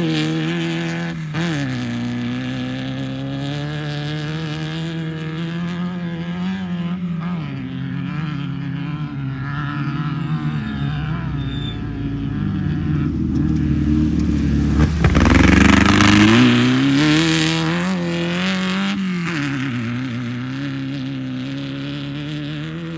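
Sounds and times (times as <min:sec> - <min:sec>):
engine revving: 0:00.0 - 0:22.9
sharp knock: 0:13.4 - 0:16.6.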